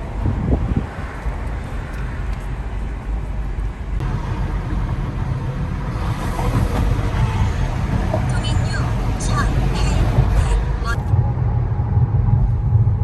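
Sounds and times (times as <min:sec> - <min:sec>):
car road and engine rumble: 0:00.0 - 0:13.0.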